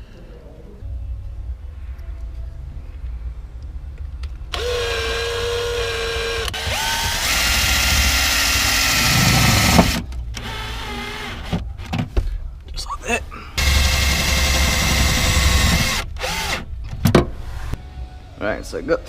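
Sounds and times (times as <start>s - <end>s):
power drill motor whine: 4.5s - 11.3s, 13.6s - 16.6s.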